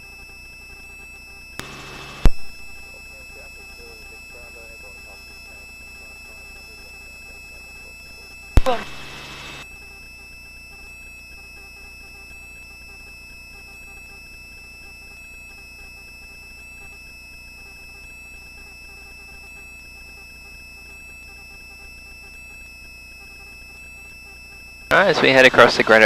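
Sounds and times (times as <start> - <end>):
helicopter in flight: 0.0 - 16.9.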